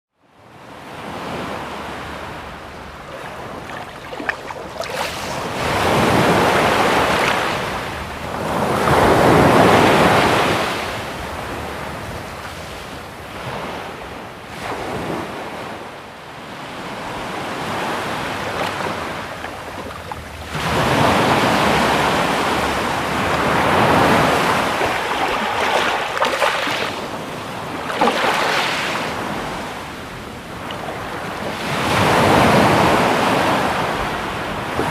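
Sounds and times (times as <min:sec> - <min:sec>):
sea waves breaking: 0:00.8 - 0:15.7, 0:16.6 - 0:34.9.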